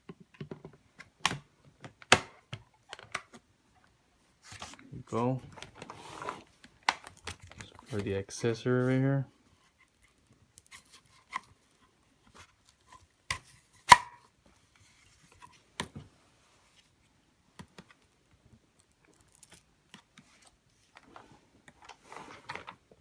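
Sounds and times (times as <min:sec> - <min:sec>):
plastic parts clicking and knocking: 0:00.0 - 0:03.4.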